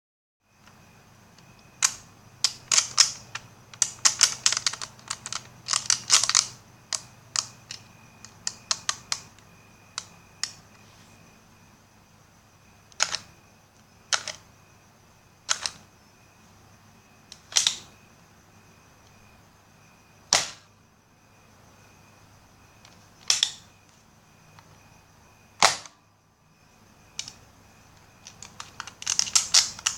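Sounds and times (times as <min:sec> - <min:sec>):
toy blaster mechanism clicking: 0:23.2 - 0:23.6, 0:28.3 - 0:29.9.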